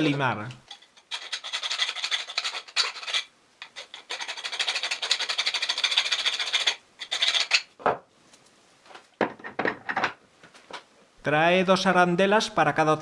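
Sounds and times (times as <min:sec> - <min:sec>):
hand file rasping on metal: 0:01.1 - 0:07.6.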